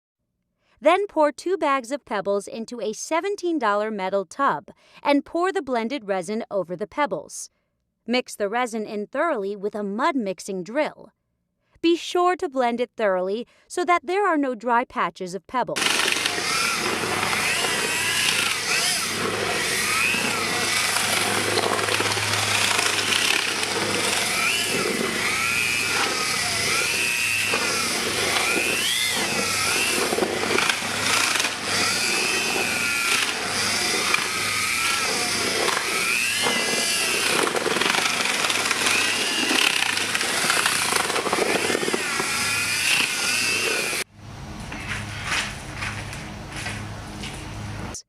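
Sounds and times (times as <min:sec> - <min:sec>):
mixing drill motor: 0:15.8 - 0:44.1.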